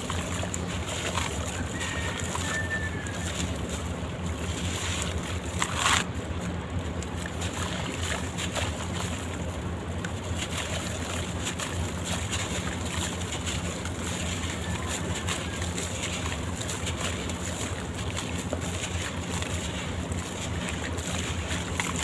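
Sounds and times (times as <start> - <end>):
watery sloshing: 0.0 - 22.0
loud crunch: 0.4 - 6.2.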